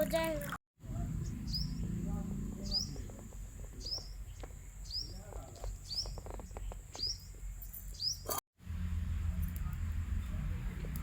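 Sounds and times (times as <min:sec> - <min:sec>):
bird chirping: 0:01.0 - 0:08.4.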